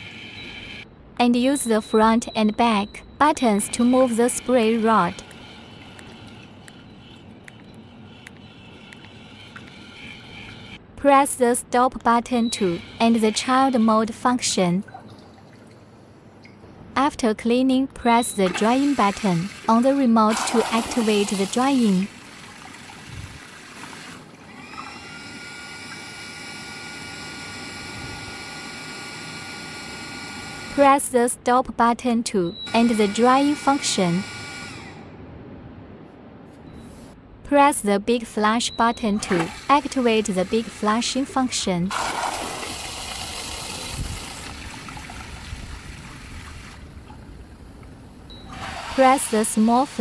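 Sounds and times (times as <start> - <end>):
warm-air dryer fan whine: 0.0 - 0.9, 18.5 - 30.9, 32.7 - 36.4, 39.2 - 50.0
toilet flushing: 3.6 - 7.3, 12.6 - 14.3, 18.5 - 30.8, 39.2 - 50.0.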